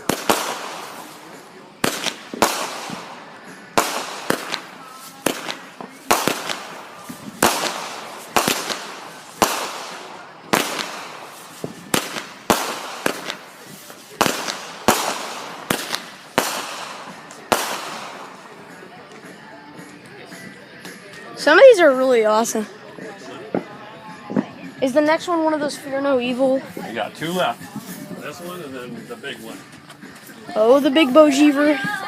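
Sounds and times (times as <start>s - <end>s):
fireworks bangs: 0.0s - 18.8s
fireworks crackle and hiss: 0.0s - 19.3s, 25.8s - 32.0s.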